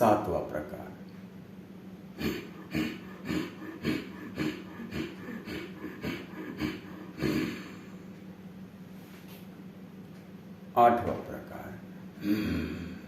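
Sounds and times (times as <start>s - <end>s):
person breathing forcefully through throat: 2.2s - 8.1s.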